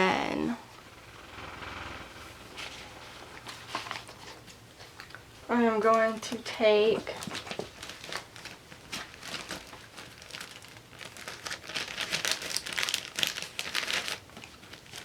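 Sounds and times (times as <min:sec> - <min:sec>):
sticker sheets crinkling: 0:05.8 - 0:15.0.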